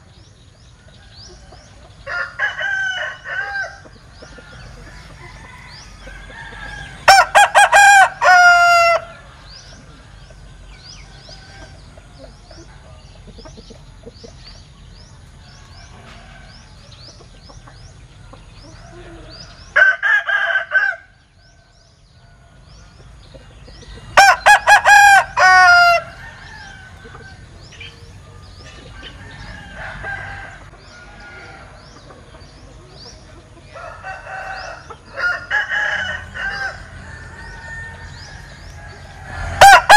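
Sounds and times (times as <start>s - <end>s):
small birds chirping: 0.0s - 39.9s
rooster crowing: 2.0s - 3.8s, 4.8s - 9.3s, 18.8s - 21.2s, 24.2s - 27.4s, 29.0s - 31.8s, 33.8s - 39.9s.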